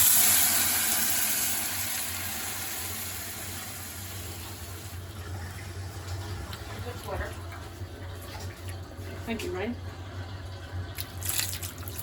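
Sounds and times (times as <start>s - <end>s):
pot sizzling hiss: 0.0s - 5.0s.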